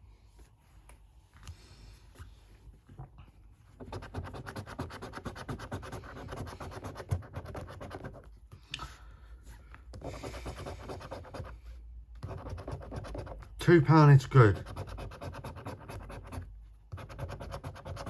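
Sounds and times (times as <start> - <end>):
scratch card being scratched: 3.9 - 8.2, 10.0 - 11.6, 12.2 - 13.6, 14.4 - 18.0.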